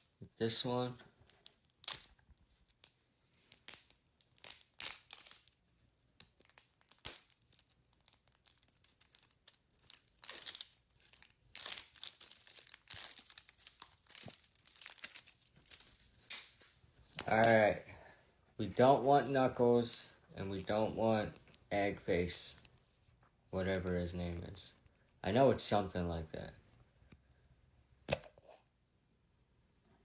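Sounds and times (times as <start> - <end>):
plastic packaging crinkling and tearing: 1.2 - 5.6, 6.2 - 16.5.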